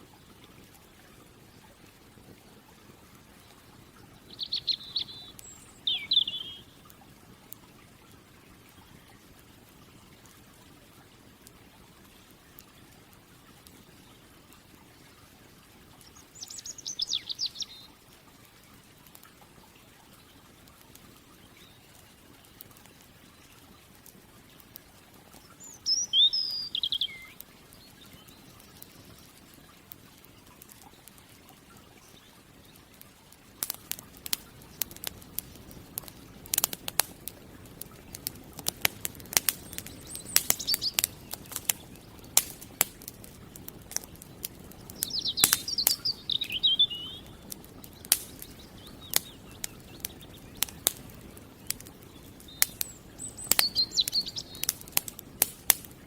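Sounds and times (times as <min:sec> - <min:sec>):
campfire crackling and popping: 0:00.0 - 0:56.0
songbird chirping: 0:04.2 - 0:06.8, 0:16.0 - 0:18.0, 0:25.0 - 0:29.5, 0:37.9 - 0:56.0
low rushing hiss: 0:33.3 - 0:56.0.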